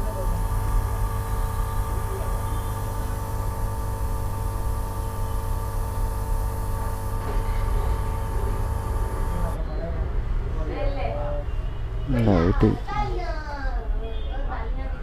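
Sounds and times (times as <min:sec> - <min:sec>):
hot-air gun blowing: 0:00.5 - 0:09.6.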